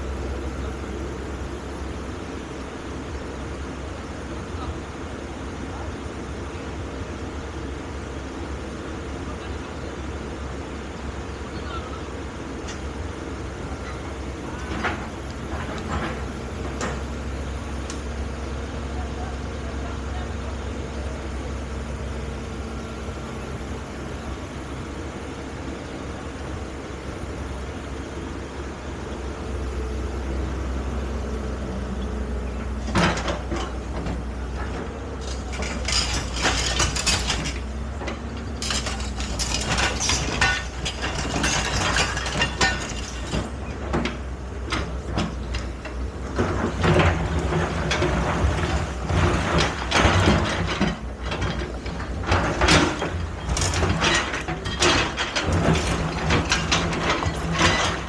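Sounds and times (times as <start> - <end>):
excavator engine running: 0.0 - 58.0
metal clanking and rattling: 13.8 - 17.2, 32.8 - 58.0.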